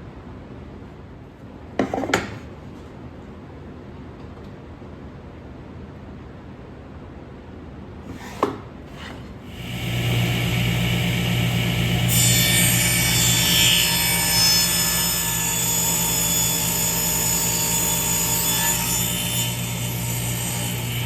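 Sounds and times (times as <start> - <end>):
power tool cutting wood: 9.5 - 21.0
power tool motor hum: 9.6 - 17.4.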